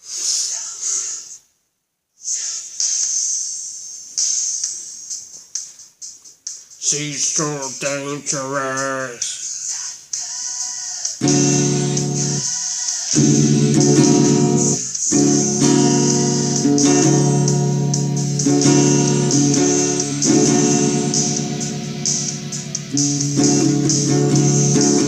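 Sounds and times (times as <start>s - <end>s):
rock guitar and bass music: 11.2s - 12.6s, 13.2s - 25.0s.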